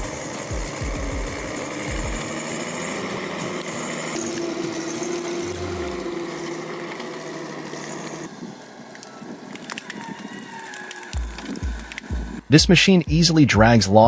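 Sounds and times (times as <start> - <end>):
heavy machinery engine running: 0.0 - 9.8
steady whine: 0.0 - 10.0, 11.0 - 13.8.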